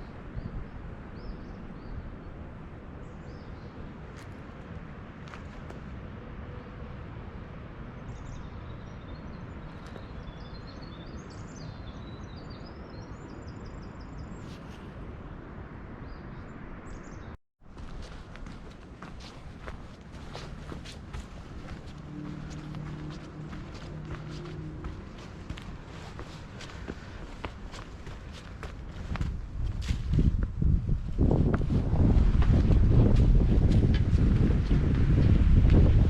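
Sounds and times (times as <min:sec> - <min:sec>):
small songbirds chirping: 0:03.0 - 0:04.3, 0:08.0 - 0:14.8, 0:16.0 - 0:30.3.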